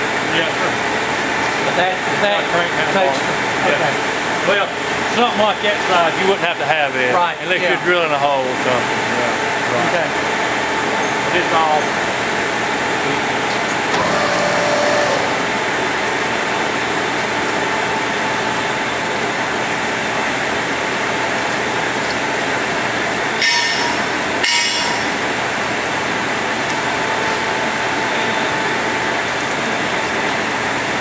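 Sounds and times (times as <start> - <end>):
lathe running: 10.2 - 30.9
sharp metal clanks: 23.4 - 25.2.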